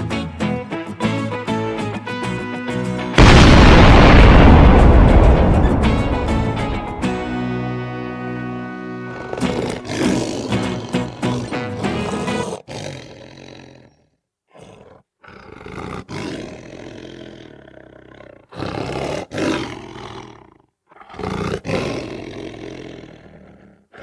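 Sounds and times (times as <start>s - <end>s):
lion roaring: 9.1s - 24.0s.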